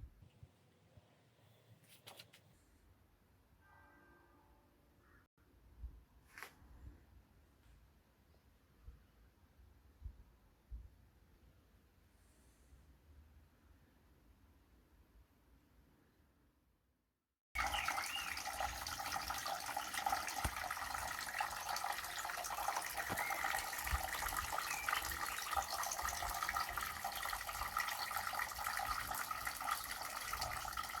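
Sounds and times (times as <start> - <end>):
small waterfall splashing: 17.6 - 31.0.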